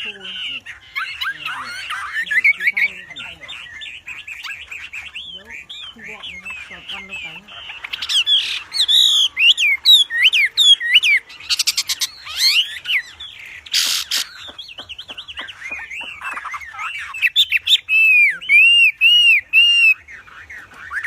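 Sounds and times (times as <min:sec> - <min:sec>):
songbird singing whistled notes: 0:00.0 - 0:21.0
bird rattling trill: 0:05.6 - 0:17.6.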